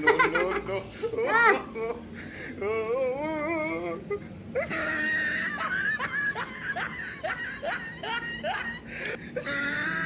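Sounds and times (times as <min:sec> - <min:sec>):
woman squealing: 0:09.4 - 0:10.0.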